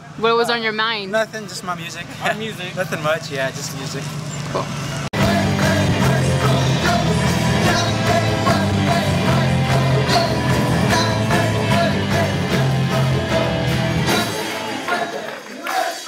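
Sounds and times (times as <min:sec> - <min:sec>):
rock or pop background music: 0:05.2 - 0:14.9.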